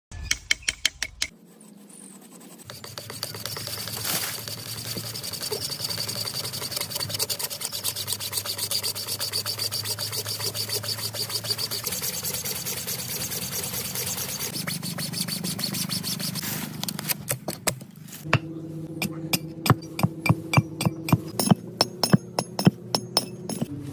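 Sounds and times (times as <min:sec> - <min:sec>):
small machine fast ticking: 0:02.7 - 0:16.3.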